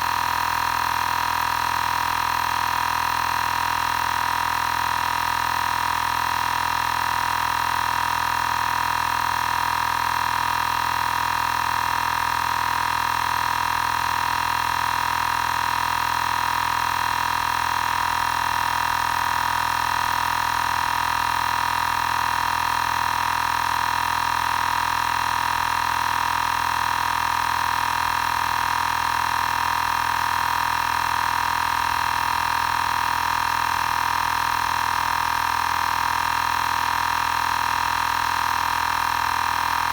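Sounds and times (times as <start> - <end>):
air compressor humming: 0.0 - 4.1.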